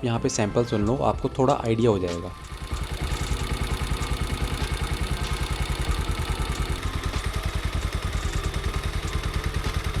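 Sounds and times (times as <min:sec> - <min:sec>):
motorcycle engine idling: 0:02.3 - 0:10.0.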